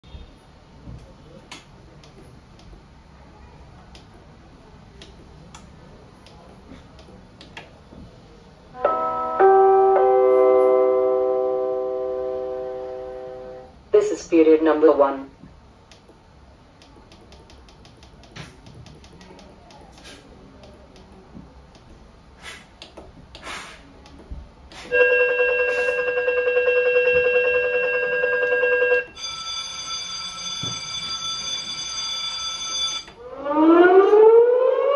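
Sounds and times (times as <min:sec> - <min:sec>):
electronic three-note chime: 0:08.8 - 0:13.7, 0:24.9 - 0:29.1
high alarm-like tone: 0:24.9 - 0:34.0.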